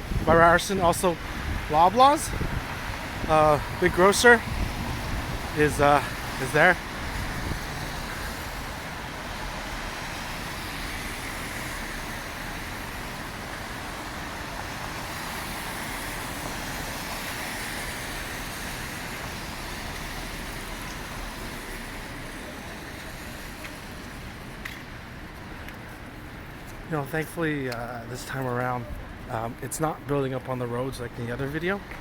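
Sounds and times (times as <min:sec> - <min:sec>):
street traffic passing: 0:00.0 - 0:32.0
tyres hissing on wet pavement: 0:00.4 - 0:25.2.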